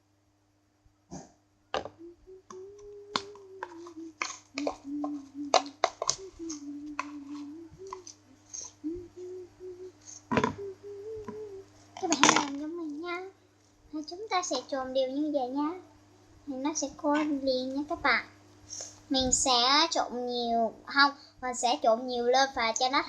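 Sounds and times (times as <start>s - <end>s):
person humming softly: 1.8s - 14.6s.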